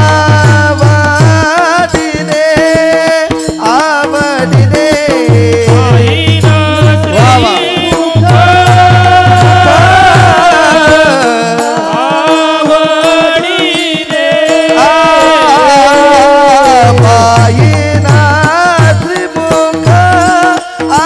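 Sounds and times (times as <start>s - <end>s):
hand drum beats: 0.0s - 21.0s.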